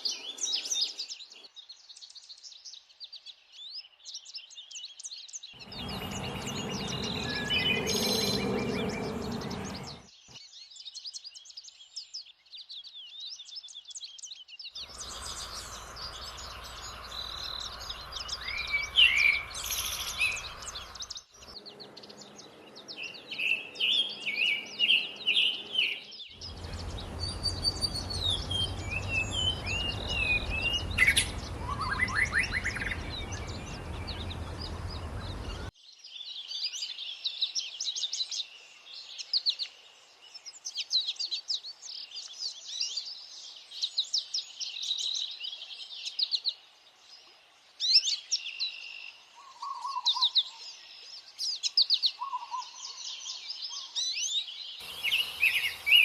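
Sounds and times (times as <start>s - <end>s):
songbirds singing: 0.0s - 56.0s
low wind rumble: 5.6s - 10.1s, 14.9s - 23.3s, 26.4s - 35.7s.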